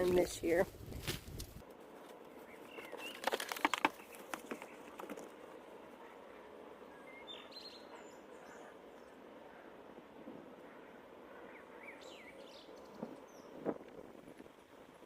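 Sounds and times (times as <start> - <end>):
faint bird chirps: 6.0 - 9.9.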